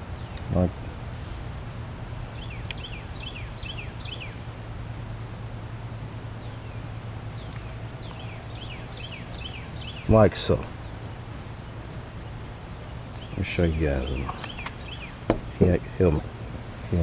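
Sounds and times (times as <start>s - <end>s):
steady low hum: 0.0s - 17.0s
bird singing high chirps: 2.3s - 4.4s, 6.4s - 17.0s.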